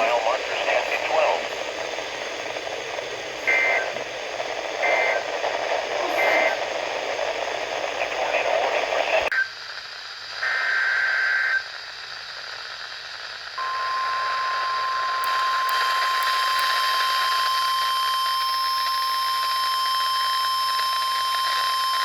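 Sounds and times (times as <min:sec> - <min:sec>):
buzzy digital data tones: 0:13.6 - 0:22.0
steady alarm tone: 0:13.6 - 0:22.0.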